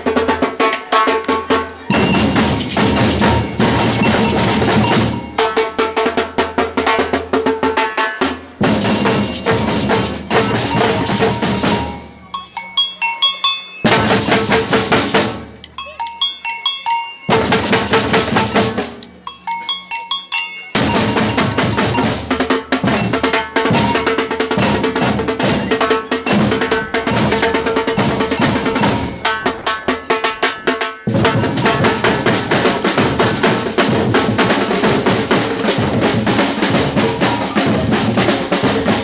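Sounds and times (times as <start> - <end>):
samba percussion band: 0.0 - 12.7, 13.8 - 16.1, 17.3 - 39.0
bell-like strikes: 1.9 - 5.6, 8.8 - 22.2, 22.9 - 29.8.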